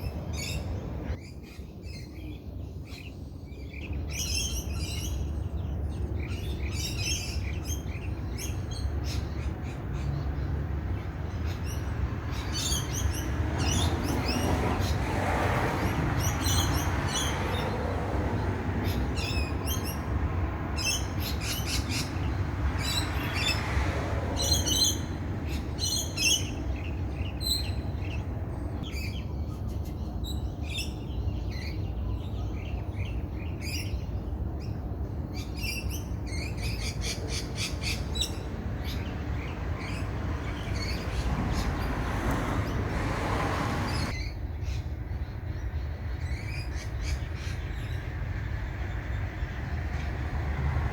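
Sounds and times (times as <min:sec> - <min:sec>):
steady low rumble: 0:00.0 - 0:01.2
wild birds chirping and trilling: 0:00.0 - 0:50.9.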